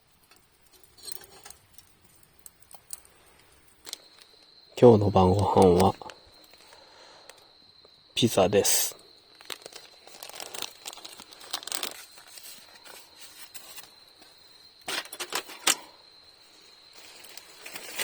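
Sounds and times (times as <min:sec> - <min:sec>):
plastic packaging crinkling: 0:09.3 - 0:14.0, 0:17.0 - 0:18.0.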